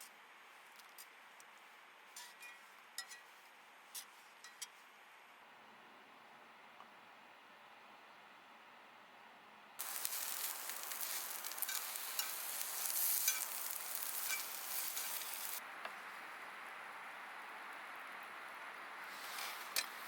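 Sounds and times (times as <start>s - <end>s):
food sizzling in a pan: 9.8s - 15.6s
spitting crackles: 9.8s - 15.6s.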